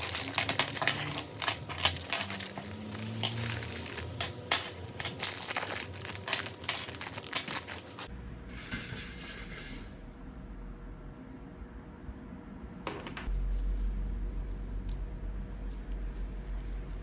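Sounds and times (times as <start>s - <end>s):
packaging crinkling: 0.0s - 8.1s.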